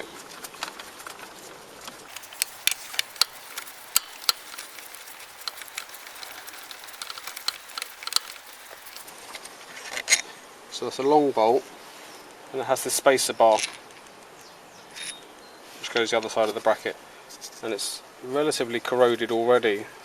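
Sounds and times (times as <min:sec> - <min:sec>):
metallic clicks of hand tools: 0:02.1 - 0:09.1.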